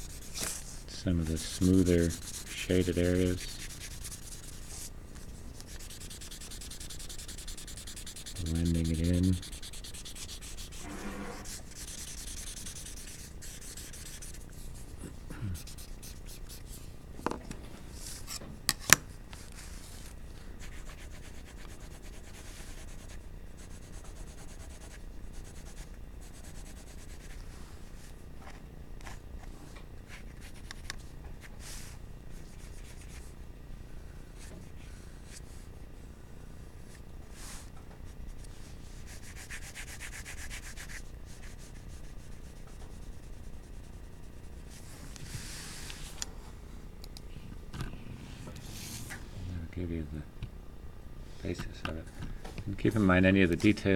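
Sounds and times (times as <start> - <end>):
pencil rubbing on paper: 0.0 - 4.9, 5.5 - 14.9, 15.6 - 16.8, 20.6 - 27.4, 31.6 - 33.3, 38.9 - 46.0.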